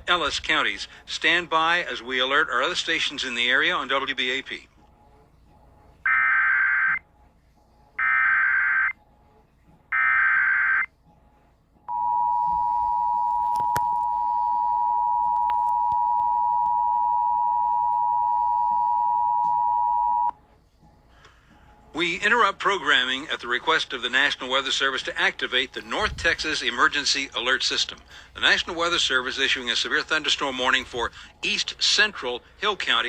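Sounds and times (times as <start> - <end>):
two-tone attention signal: 11.9 - 20.3.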